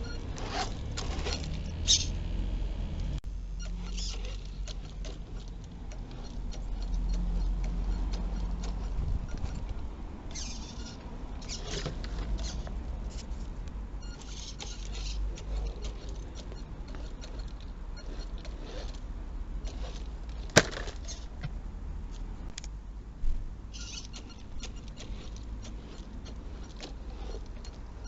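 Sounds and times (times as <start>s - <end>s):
toy car rumbling through mud: 0.0s - 13.4s, 14.0s - 21.4s, 23.7s - 28.0s
crackling and ticking: 0.0s - 21.5s.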